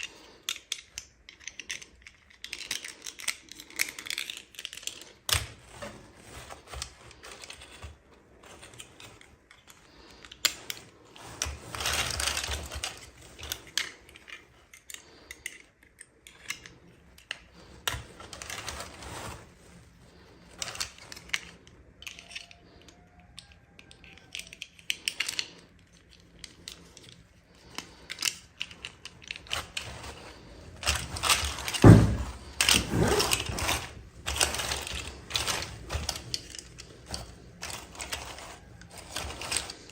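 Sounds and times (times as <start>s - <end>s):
plastic pieces clicking: 0.0s - 18.9s, 20.4s - 39.9s
packaging rustling: 27.2s - 39.9s.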